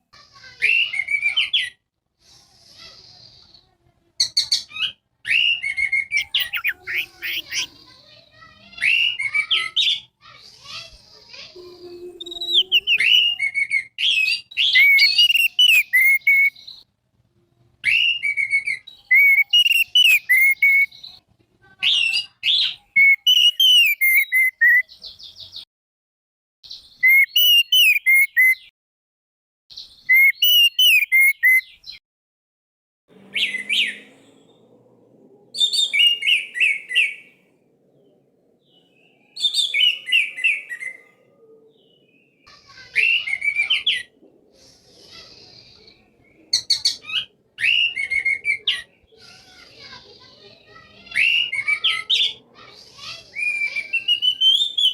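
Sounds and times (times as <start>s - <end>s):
thrush singing whistled notes: 5.3s - 7.7s, 12.1s - 16.6s, 17.9s - 20.9s, 23.0s - 24.8s, 27.0s - 28.7s, 30.0s - 31.8s, 53.4s - 54.9s
faint low hum: 33.1s - 39.4s.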